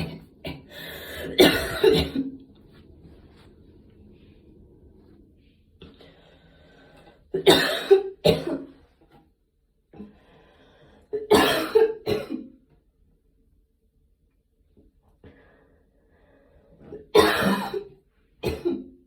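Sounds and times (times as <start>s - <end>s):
person coughing harshly: 0.0s - 2.4s, 7.4s - 8.7s, 11.2s - 12.5s, 17.1s - 18.9s.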